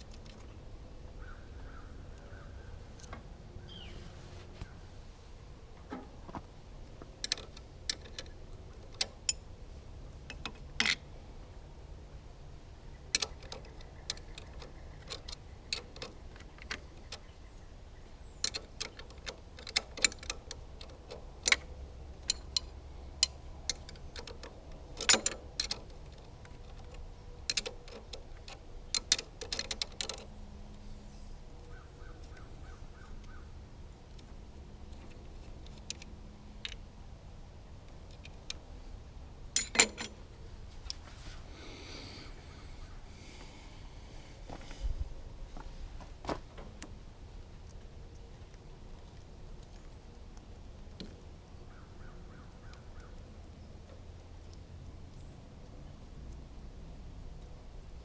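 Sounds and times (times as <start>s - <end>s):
hand tools clinking on metal: 39.6s - 40.2s.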